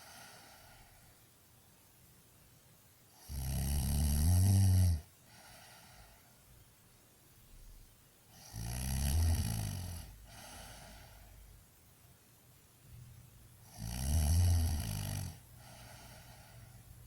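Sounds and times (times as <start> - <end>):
quiet exhale: 0.0 - 1.2, 5.2 - 6.5, 10.0 - 11.6, 15.4 - 17.0
loud snoring: 3.2 - 5.1, 8.4 - 10.7, 13.7 - 15.4.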